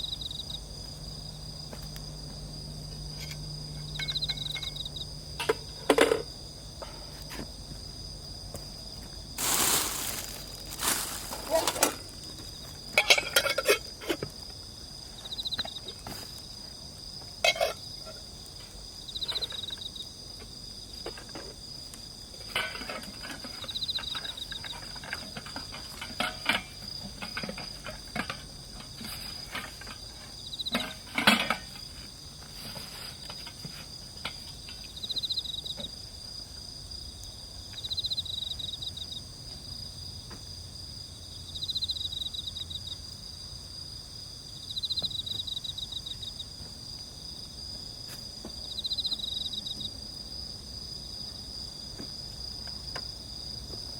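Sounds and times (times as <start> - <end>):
pulsing insect chirp: 0.0 - 15.9, 40.8 - 47.8
crickets chorus: 0.0 - 53.9.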